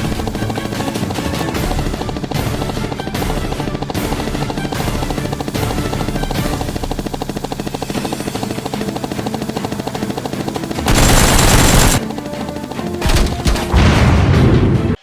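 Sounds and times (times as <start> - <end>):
action music with pulsing beat: 0.0 - 15.0
automatic gunfire bursts: 10.8 - 12.0.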